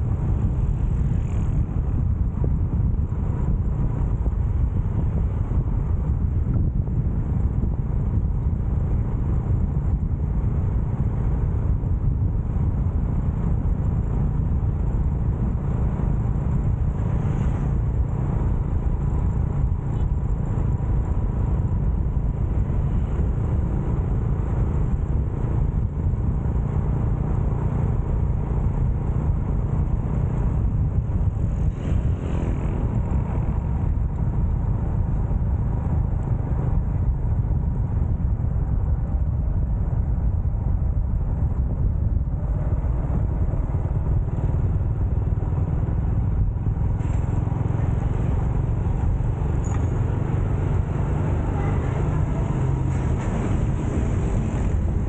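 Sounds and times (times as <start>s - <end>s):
motorcycle engine running: 0.0s - 55.0s
wind and road noise rumble: 0.0s - 55.0s.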